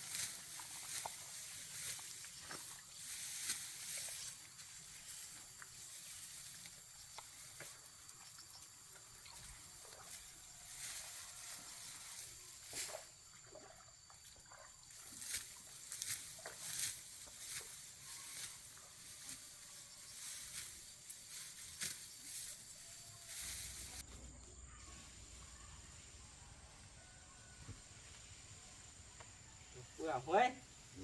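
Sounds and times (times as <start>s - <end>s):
dry rice stalks rustling: 0.0s - 13.1s, 15.0s - 24.2s
insects buzzing: 0.0s - 31.0s.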